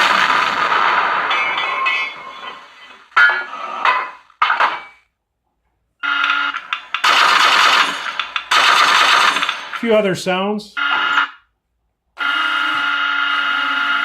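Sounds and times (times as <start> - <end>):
tank gun firing effects on speaker: 0.0 - 1.7, 6.1 - 10.0.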